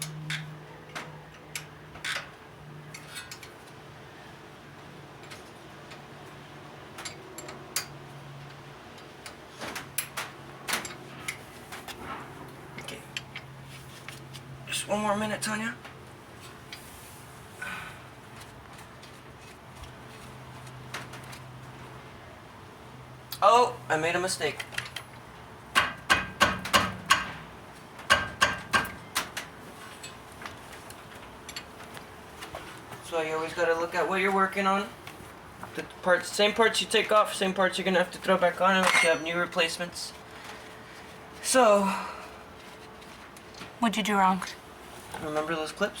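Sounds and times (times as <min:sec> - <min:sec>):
hand tools clicking and knocking: 0:38.8 - 0:39.3.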